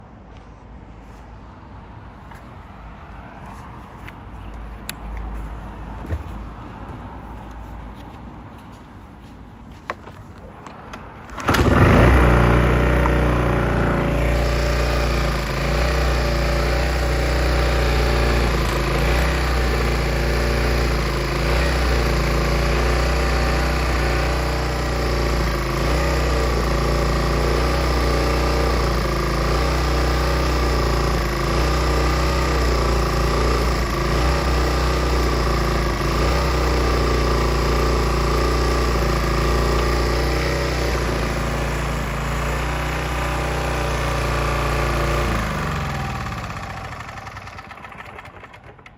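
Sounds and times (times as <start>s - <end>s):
generator engine starting and running: 9.8s - 48.9s.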